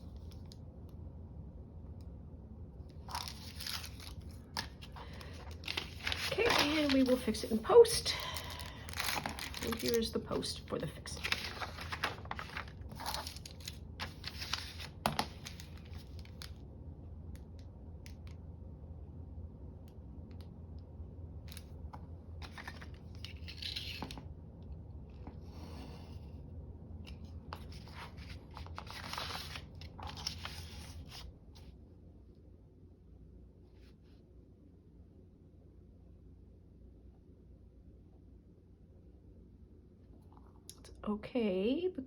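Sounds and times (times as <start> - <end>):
steady low hum: 0.0 - 42.0
paper rustling and tearing: 3.0 - 10.4, 11.0 - 16.4, 27.5 - 31.3.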